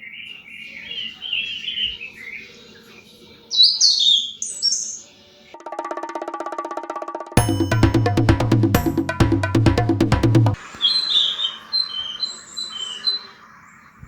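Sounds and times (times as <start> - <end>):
small birds chirping: 0.0 - 5.6, 10.6 - 14.0
music with ticking beat: 5.6 - 10.6.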